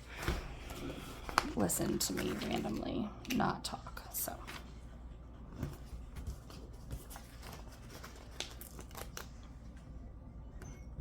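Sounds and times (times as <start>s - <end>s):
low room hum: 0.0s - 11.0s
paper rustling and ticking: 1.2s - 2.9s, 5.7s - 9.4s.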